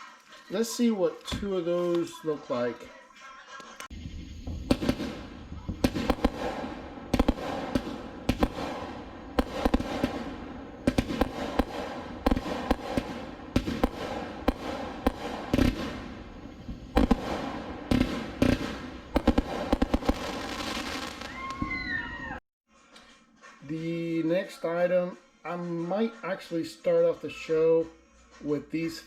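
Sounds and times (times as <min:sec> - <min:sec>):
firework crackling: 0:03.7 - 0:22.4
firework launch thumps: 0:03.9 - 0:21.7
firework aerial breaks: 0:03.9 - 0:22.4.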